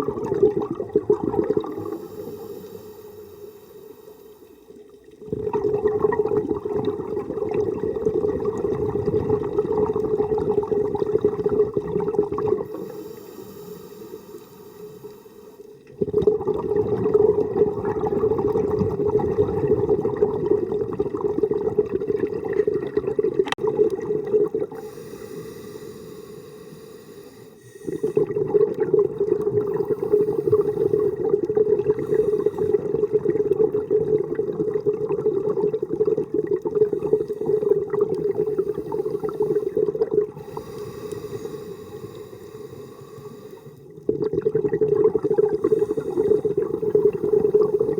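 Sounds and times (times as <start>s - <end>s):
diver exhaling bubbles: 0.0s - 3.5s, 5.2s - 13.8s, 15.9s - 26.3s, 27.7s - 47.9s
regulator inhalation hiss: 1.8s - 4.6s, 12.7s - 15.7s, 24.8s - 28.2s, 40.4s - 43.8s.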